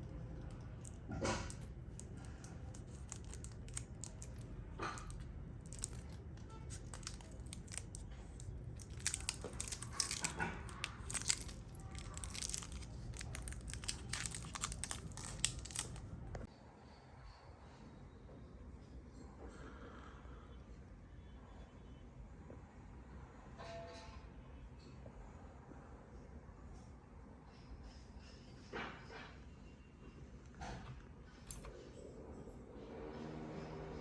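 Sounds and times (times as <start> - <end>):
packaging crinkling and rustling: 0.5 - 16.5.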